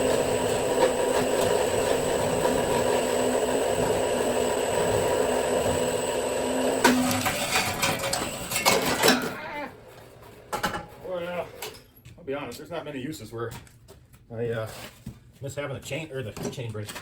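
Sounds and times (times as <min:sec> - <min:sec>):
wire winder motor humming: 0:00.0 - 0:10.7.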